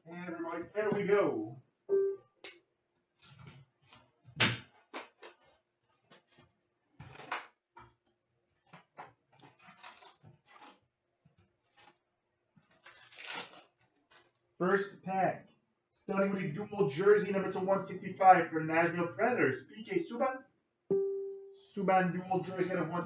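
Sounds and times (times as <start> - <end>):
foil pack tearing open: 4.6 - 5.7, 7.0 - 7.5, 9.4 - 10.9, 12.6 - 14.4
foil wrappers crinkling: 4.7 - 6.4, 9.3 - 10.8, 12.6 - 14.4.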